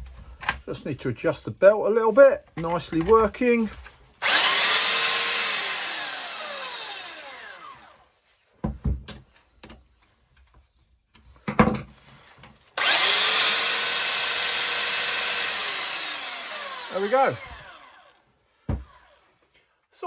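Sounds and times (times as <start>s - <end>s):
belt sander whining: 4.2s - 8.0s, 12.8s - 19.3s.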